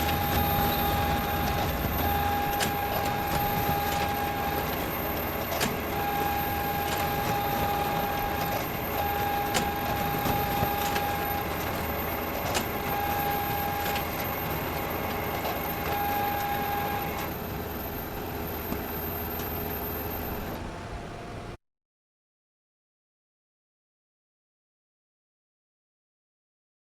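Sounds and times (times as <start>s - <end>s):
photocopier clicks: 0.0s - 17.3s
photocopier whirring: 0.0s - 20.7s.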